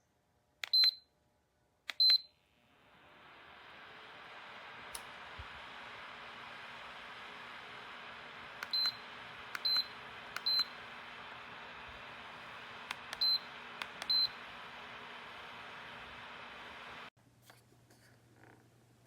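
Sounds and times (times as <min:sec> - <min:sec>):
heater fan blowing: 0:02.0 - 0:17.1.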